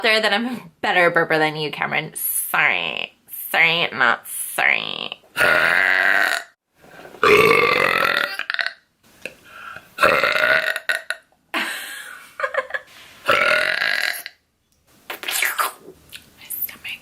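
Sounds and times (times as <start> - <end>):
girls burping loudly: 5.4 - 6.5, 7.2 - 8.7, 10.0 - 11.2, 13.3 - 14.2.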